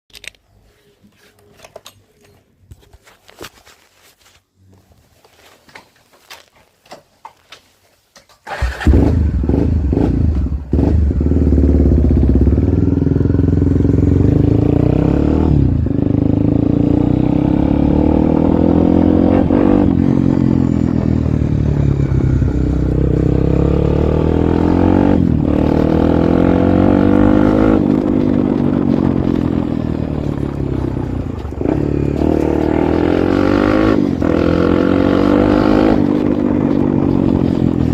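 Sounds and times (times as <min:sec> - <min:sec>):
motorcycle engine revving: 0:08.5 - 0:37.9.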